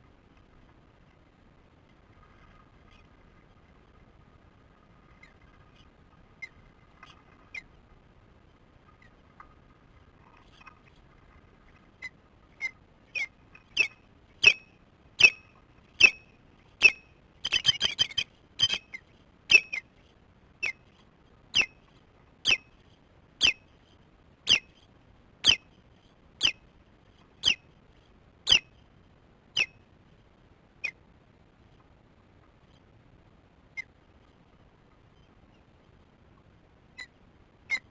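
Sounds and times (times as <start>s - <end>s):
osprey alarm call: 12.6s - 19.8s, 22.4s - 22.6s, 23.4s - 23.6s, 24.5s - 24.7s, 25.4s - 25.7s, 26.4s - 26.6s, 27.4s - 27.6s.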